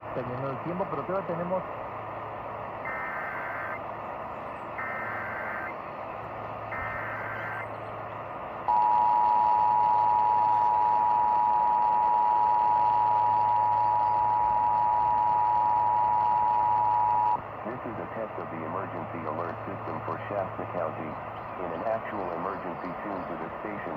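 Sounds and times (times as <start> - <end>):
constant hiss: 0.0 - 23.9
screeching digital data bursts: 2.8 - 3.8, 4.8 - 5.8, 6.7 - 7.7
two-tone attention signal: 2.9 - 3.8, 4.8 - 5.7, 6.7 - 7.6, 8.7 - 17.4.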